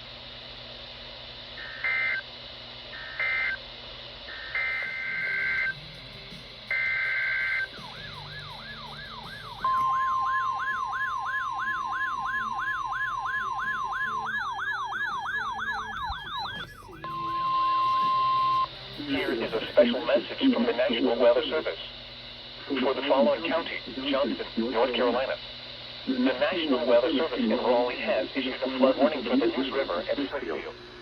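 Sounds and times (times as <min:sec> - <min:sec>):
harsh electronic data screeches: 0:04.3 - 0:05.8
steady attention tone: 0:06.6 - 0:31.0
sweeping siren tone: 0:06.7 - 0:19.3.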